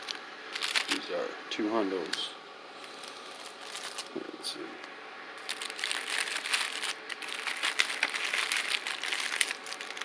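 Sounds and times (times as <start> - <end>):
wrapping crinkling and rustling: 0.5 - 1.0, 2.8 - 4.2, 5.4 - 10.0.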